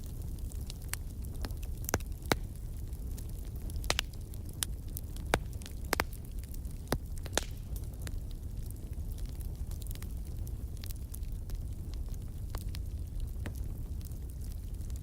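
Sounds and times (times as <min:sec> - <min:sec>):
fire crackles and pops: 0:00.0 - 0:15.0
fire rumbling in fireplace: 0:00.0 - 0:15.0.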